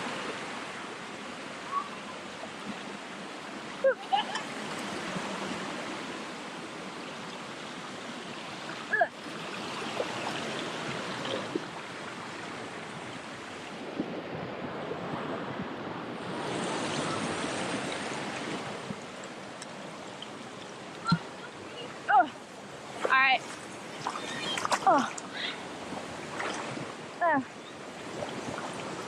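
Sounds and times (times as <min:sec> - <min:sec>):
waterfall and creek rushing: 0:16.3 - 0:29.0.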